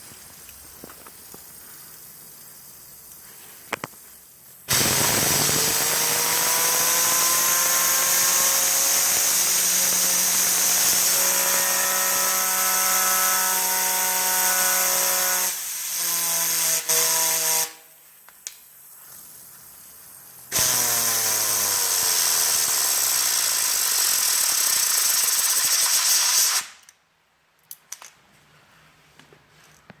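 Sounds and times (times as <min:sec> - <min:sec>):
compressed air hissing: 0:00.0 - 0:14.4
fidget spinner whirring: 0:00.2 - 0:13.4, 0:21.4 - 0:26.6.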